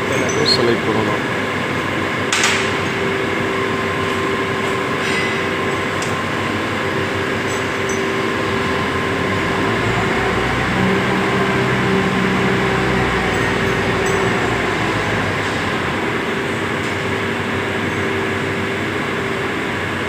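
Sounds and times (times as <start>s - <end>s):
machinery hum and hiss: 0.0s - 20.0s.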